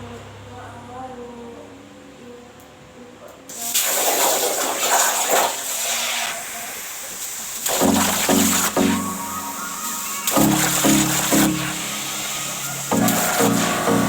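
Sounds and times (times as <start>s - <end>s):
plasma cutter torch hissing: 3.5s - 14.0s.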